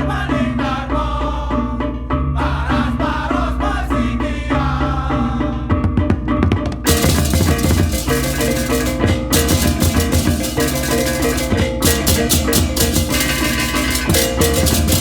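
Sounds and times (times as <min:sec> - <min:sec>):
hand drums: 0:05.7 - 0:15.0
fast clashing cymbals: 0:06.9 - 0:15.0
low ringing large gongs: 0:06.9 - 0:15.0
metallic gong-chime melody: 0:06.9 - 0:15.0.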